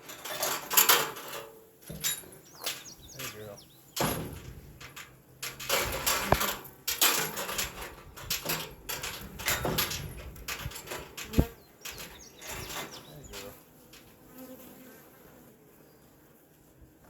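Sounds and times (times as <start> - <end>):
handling scraping and knocking: 0.0 - 14.1.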